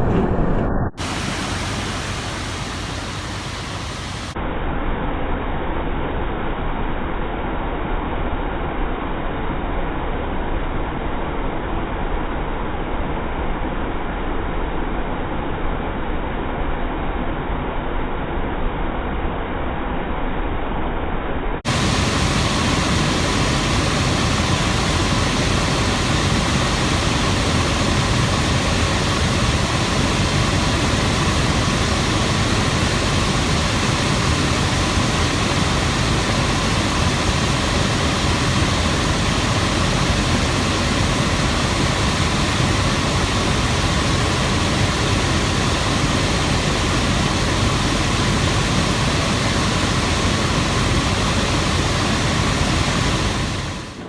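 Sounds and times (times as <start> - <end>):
blower rushing air: 0.0 - 4.4, 21.7 - 54.0.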